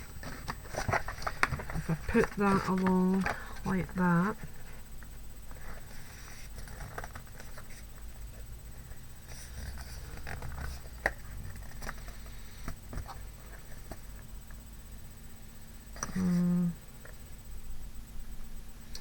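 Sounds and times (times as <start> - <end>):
card rustling and scraping: 0.2 - 4.8, 5.4 - 8.0, 9.3 - 14.2.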